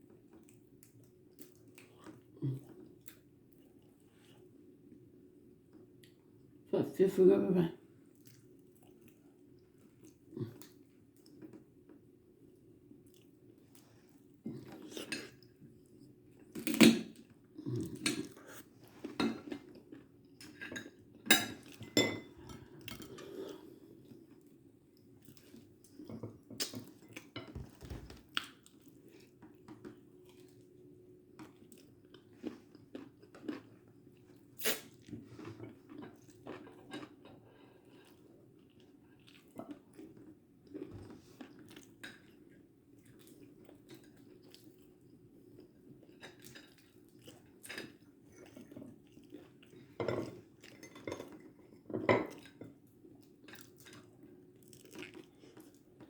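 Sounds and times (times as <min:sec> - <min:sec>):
clinks of dishes and cutlery: 0:20.5 - 0:23.1, 0:50.0 - 0:52.4
person chewing crunchy food: 0:31.4 - 0:49.9, 0:52.3 - 0:55.9.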